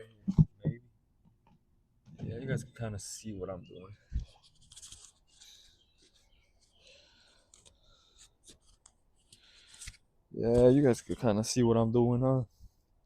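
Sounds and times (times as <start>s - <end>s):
light scratching and rustling: 4.0s - 11.8s.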